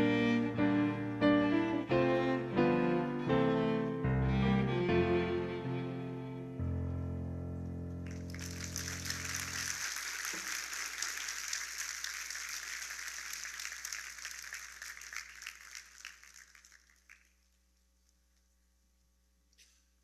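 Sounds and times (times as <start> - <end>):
audience applauding: 8.0 - 17.4.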